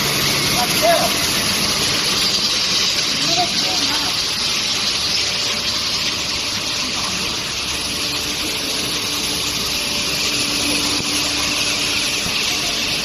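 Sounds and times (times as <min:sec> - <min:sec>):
faint high machinery whine: 0:00.0 - 0:13.0
rushing water spray: 0:00.0 - 0:13.0.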